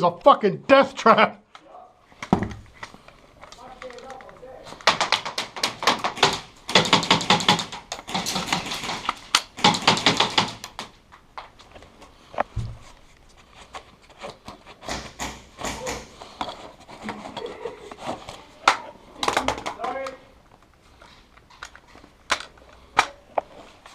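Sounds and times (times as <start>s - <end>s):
airsoft guns firing bursts: 4.8s - 10.9s.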